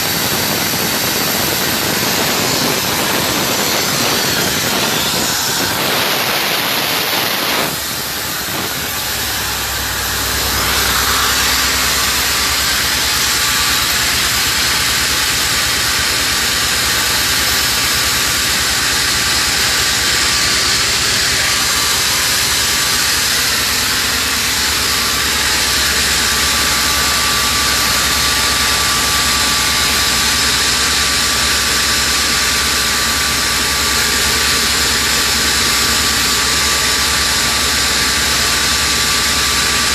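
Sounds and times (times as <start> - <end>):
faint high whine: 0.0 - 15.9
machinery drone with low hum: 0.0 - 39.9.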